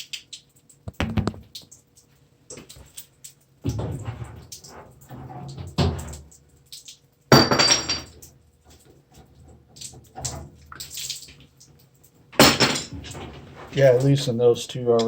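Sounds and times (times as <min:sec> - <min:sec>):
metal tools clattering: 0:07.3 - 0:08.2, 0:12.4 - 0:14.3.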